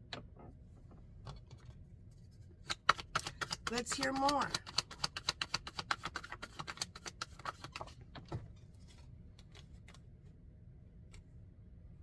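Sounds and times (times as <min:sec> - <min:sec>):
cards shuffled by hand: 0:02.6 - 0:08.0.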